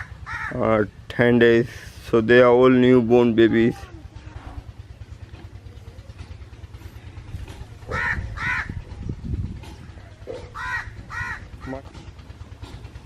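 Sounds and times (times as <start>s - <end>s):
low hum: 0.0s - 13.0s.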